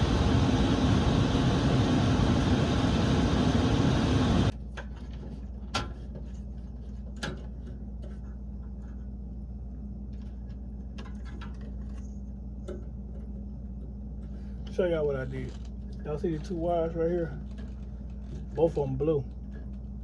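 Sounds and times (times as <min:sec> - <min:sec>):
low hum: 0:00.0 - 0:04.5.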